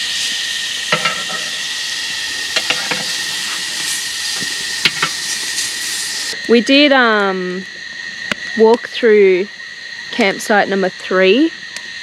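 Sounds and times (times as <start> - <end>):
food sizzling in a pan: 0.0 - 7.6.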